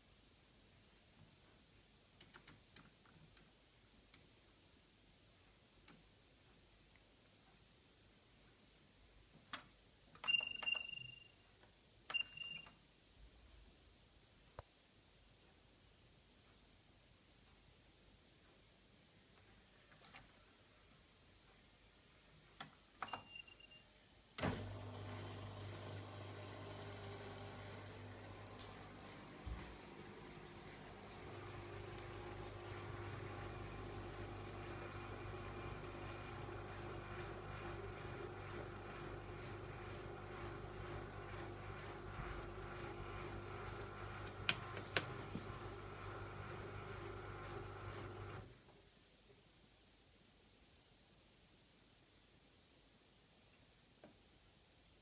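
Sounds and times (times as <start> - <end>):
washing machine electrical hum: 24.4 - 48.6.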